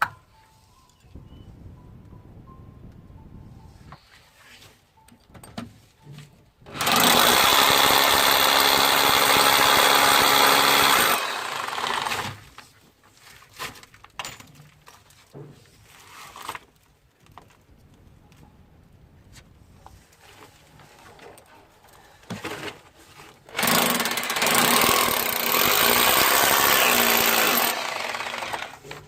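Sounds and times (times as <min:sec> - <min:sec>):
electric power drill running: 0:06.8 - 0:12.4, 0:23.5 - 0:28.9.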